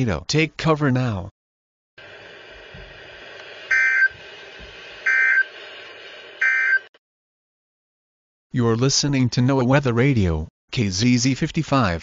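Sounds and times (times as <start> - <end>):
radio static hiss: 2.0 - 6.9
digital data tone bursts: 3.7 - 4.2, 5.1 - 5.5, 6.4 - 6.9.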